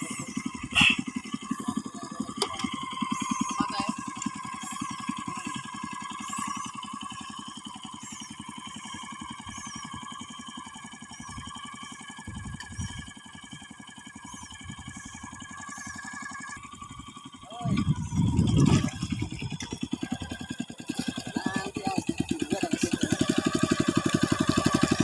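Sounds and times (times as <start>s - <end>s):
small engine running: 0.0s - 25.0s.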